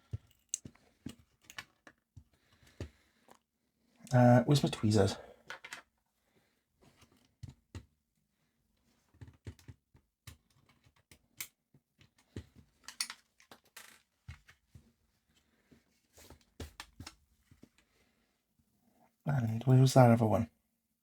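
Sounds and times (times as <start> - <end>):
small tools and screws clicking: 12.8 - 14.0.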